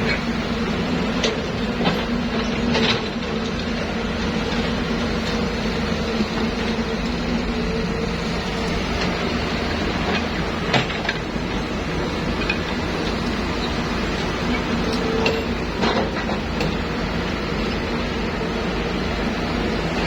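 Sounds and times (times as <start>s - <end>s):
excavator engine humming: 0.0s - 20.0s.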